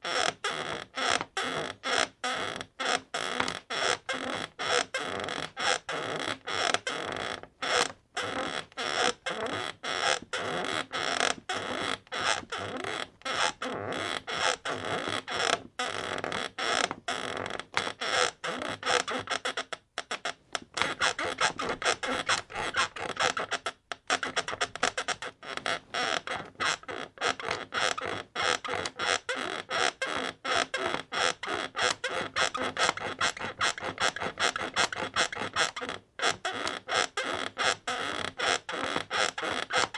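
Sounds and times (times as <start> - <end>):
bed creaking squeakily: 0.0 - 39.9.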